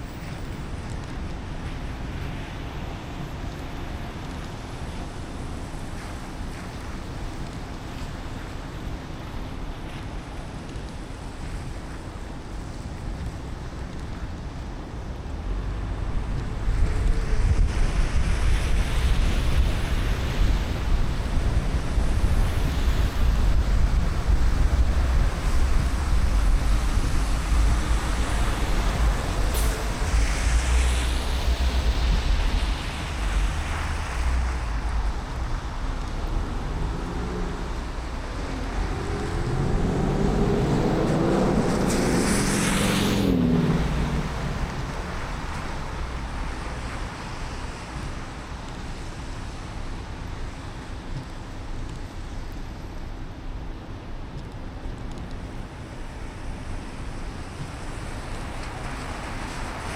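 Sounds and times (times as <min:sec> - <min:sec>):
vehicle passing on wet road: 0:00.0 - 0:53.3, 0:55.2 - 0:59.9
tyre hiss on wet road: 0:16.2 - 0:52.5, 0:55.7 - 0:59.9.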